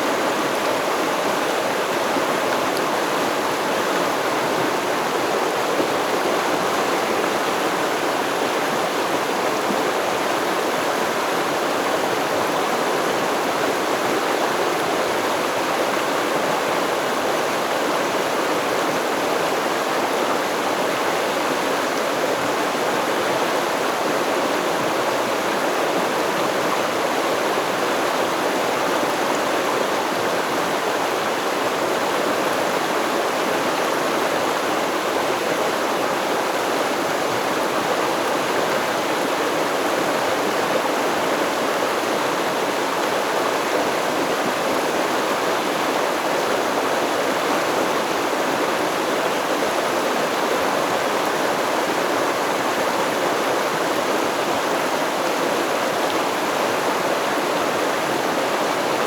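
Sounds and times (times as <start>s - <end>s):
stream flowing over rocks: 0.0s - 59.0s.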